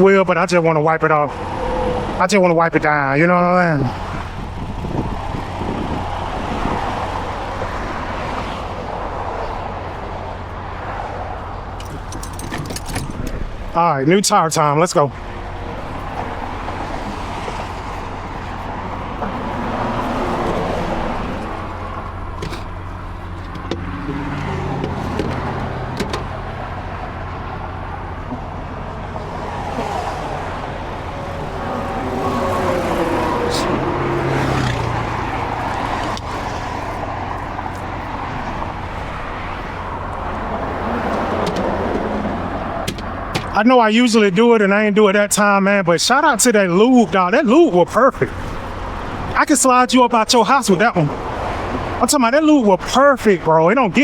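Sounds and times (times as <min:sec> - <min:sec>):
traffic passing: 0:00.0 - 0:54.0
low engine rumble: 0:01.3 - 0:43.6.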